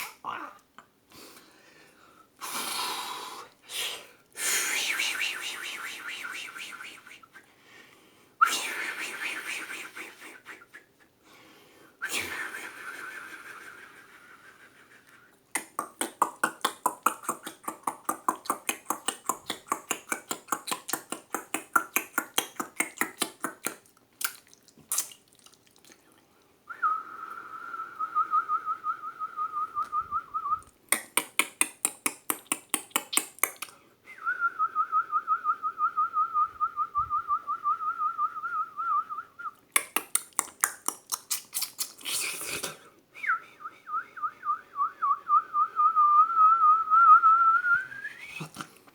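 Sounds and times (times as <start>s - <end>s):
rapid tongue clicks: 15.0s - 26.2s, 30.6s - 33.8s, 39.7s - 42.8s
person whistling birdsong: 26.7s - 30.6s, 43.2s - 48.4s.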